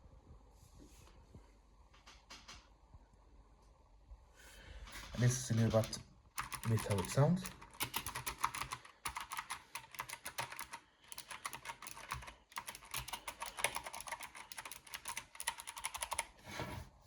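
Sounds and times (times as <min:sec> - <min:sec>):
mechanical keyboard typing clicks: 0:05.5 - 0:16.3.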